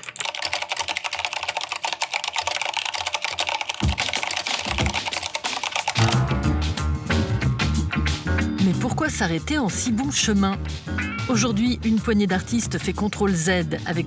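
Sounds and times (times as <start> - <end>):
fast typing on mechanical keyboard: 0.0 - 6.1
music with bass line: 6.0 - 14.0.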